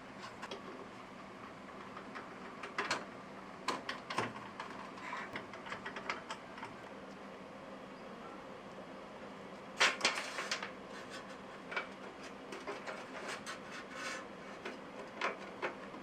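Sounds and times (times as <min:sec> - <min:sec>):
computer parts clicking and clacking: 0:03.7 - 0:06.8.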